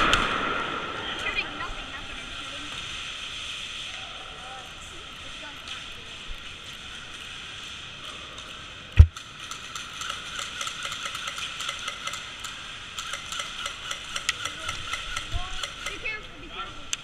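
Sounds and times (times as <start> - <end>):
irregular sharp clicks and ticks: 8.0 - 16.3.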